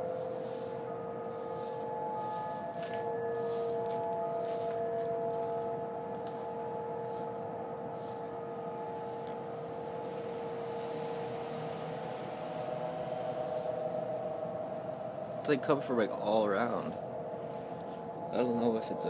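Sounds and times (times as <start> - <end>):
droning hum of held tones: 0.0 - 19.0.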